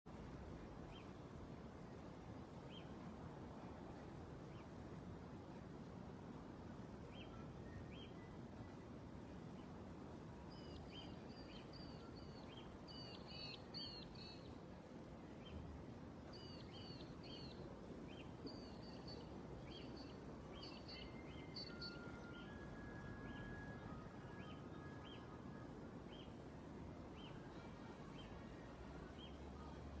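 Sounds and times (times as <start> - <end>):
faint background hiss: 0.1 - 30.0.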